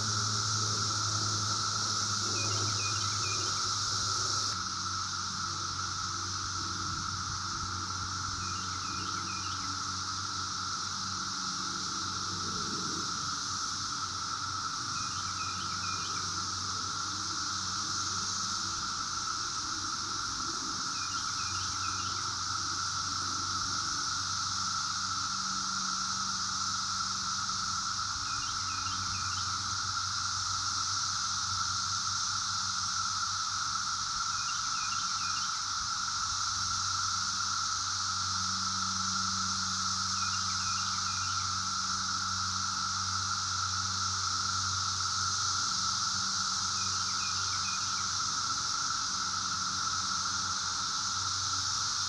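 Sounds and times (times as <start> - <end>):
cicadas droning: 0.0 - 52.0.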